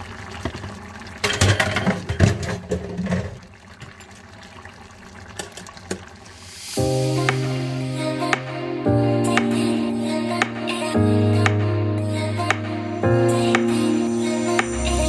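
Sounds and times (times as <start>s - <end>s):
water running and splashing: 0.0s - 6.8s
knocks and clatters: 1.2s - 4.1s.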